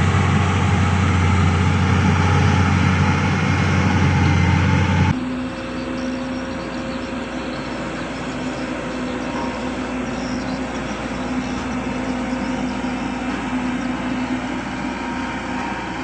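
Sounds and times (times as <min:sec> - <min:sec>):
heavy machinery engine humming: 0:00.0 - 0:05.2.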